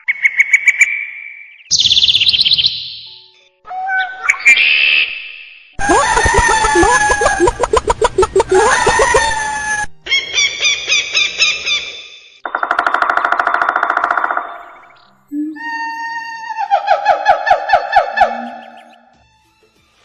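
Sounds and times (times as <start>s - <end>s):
fast even trill: 5.8s - 9.9s.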